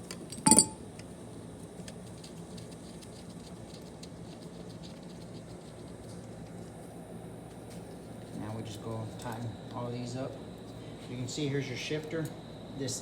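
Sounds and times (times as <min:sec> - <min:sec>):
tools clicking and tapping: 0:00.1 - 0:00.8
sharp metallic clank: 0:00.3 - 0:00.8.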